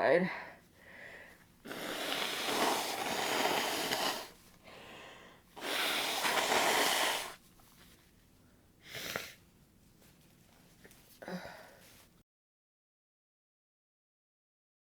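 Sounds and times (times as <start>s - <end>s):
person breathing heavily: 0.3s - 7.4s, 11.2s - 12.0s.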